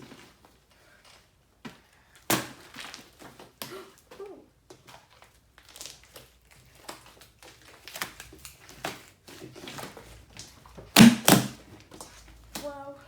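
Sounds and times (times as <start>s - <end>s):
slime squishing and crackling: 4.7s - 11.5s.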